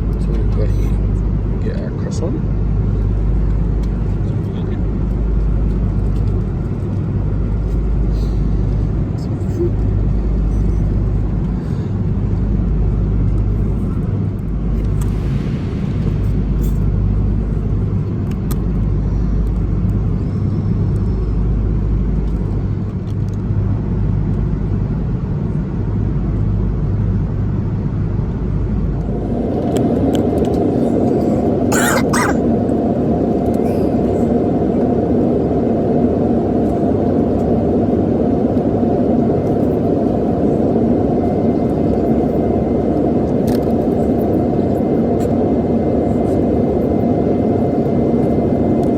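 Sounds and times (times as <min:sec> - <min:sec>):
jet cabin deep rumble: 0:00.0 - 0:48.9
higher jet roar: 0:14.0 - 0:19.6, 0:28.2 - 0:35.1.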